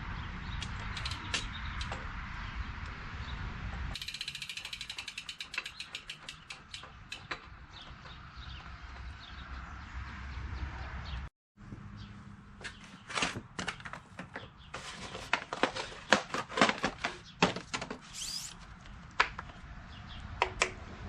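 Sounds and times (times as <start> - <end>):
tools and metal parts clicking: 0.6 - 2.0, 4.0 - 9.2.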